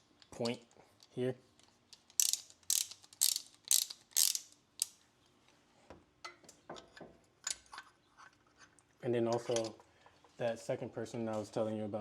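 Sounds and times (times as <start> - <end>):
ratchet tool clicking: 2.1 - 5.0.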